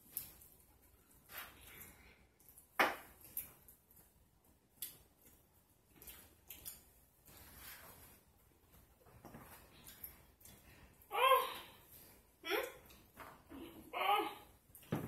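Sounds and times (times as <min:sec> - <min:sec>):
chewing and lip smacking: 0:04.7 - 0:07.1.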